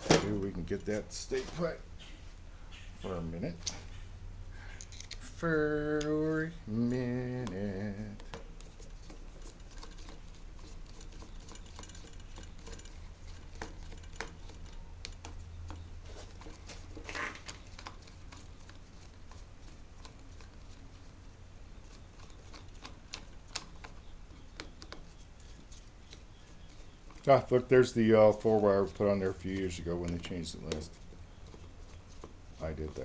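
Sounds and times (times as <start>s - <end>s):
low steady hum: 0.0s - 33.0s
hand tools clicking and tapping: 7.2s - 19.4s, 21.9s - 27.6s, 28.2s - 33.0s.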